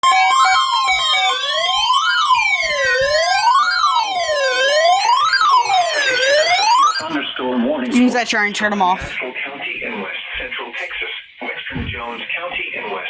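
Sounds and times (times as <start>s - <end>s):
siren-like emergency alert wail: 0.0s - 7.2s.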